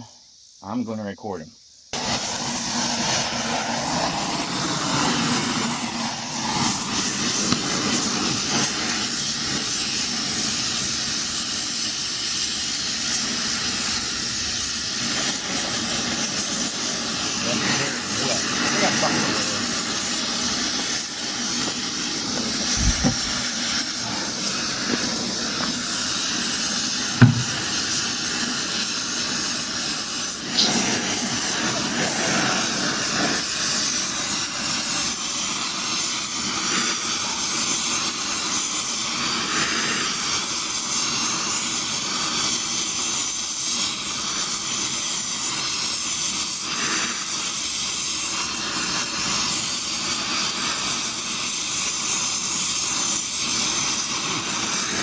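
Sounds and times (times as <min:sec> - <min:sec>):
blow torch flame hissing: 0:01.6 - 0:55.0
sharp knock: 0:22.8 - 0:23.4, 0:27.2 - 0:27.7.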